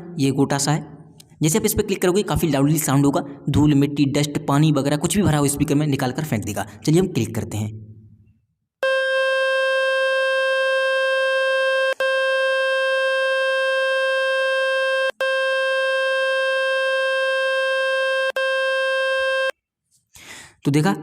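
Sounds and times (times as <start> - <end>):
loud buzzing tone: 8.8 - 19.6.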